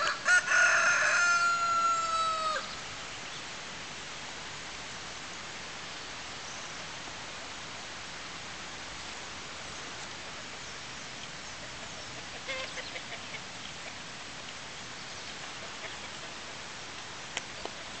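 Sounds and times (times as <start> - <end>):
steady rushing hiss: 0.0 - 18.0
bird calls: 10.6 - 14.0.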